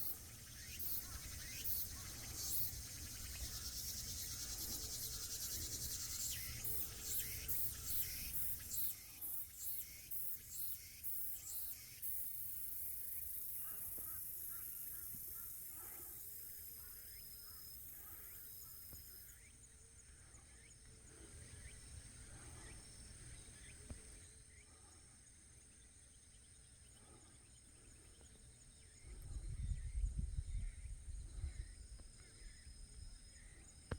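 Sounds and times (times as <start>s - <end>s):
insects chirring: 0.0s - 33.9s
wind rumbling on microphone: 28.9s - 33.9s.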